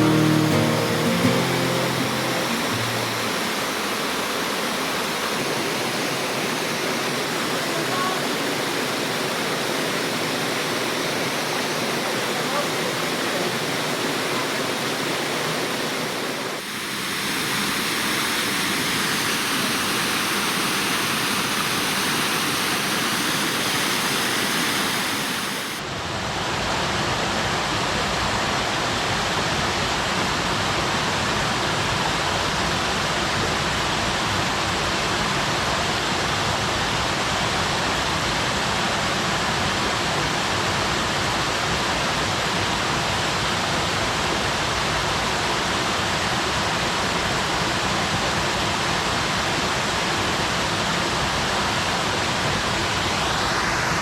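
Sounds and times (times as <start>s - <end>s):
waterfall splashing: 0.0s - 25.8s.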